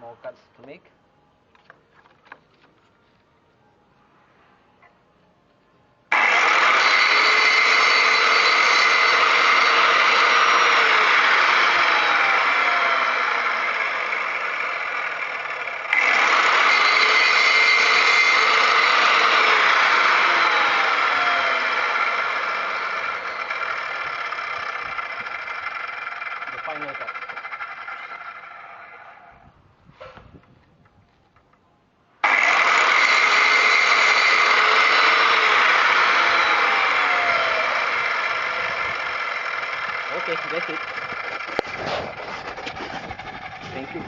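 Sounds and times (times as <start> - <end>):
miter saw cutting stone: 6.1 - 29.4, 32.2 - 44.0.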